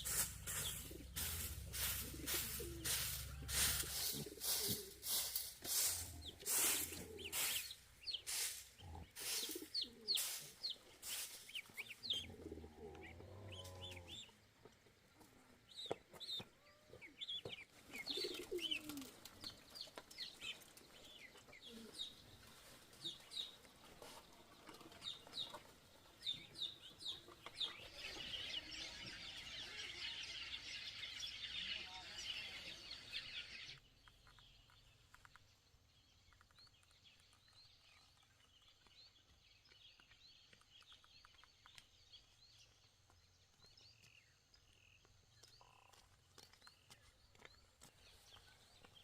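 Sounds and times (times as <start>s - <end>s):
chickens clucking: 0.0s - 14.4s, 16.9s - 29.7s
small birds chirping: 0.0s - 49.0s.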